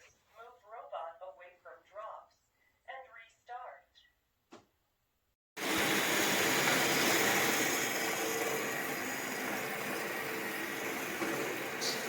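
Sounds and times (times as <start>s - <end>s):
robot vacuum fan whooshing: 5.6s - 12.0s.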